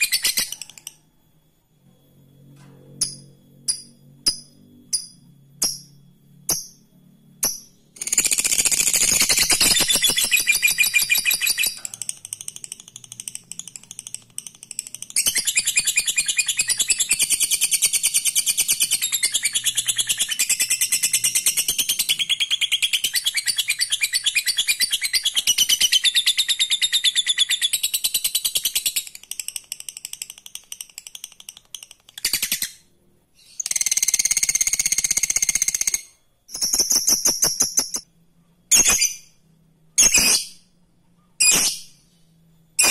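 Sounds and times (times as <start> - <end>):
bird chattering trill: 7.4 - 27.6.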